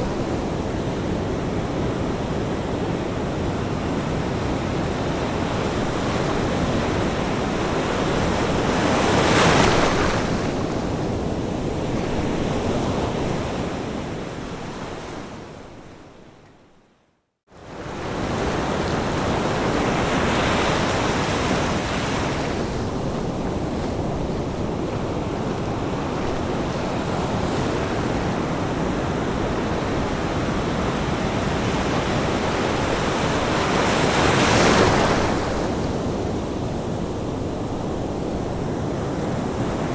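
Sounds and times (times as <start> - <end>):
ocean surf washing onto beach: 17.8 - 39.9.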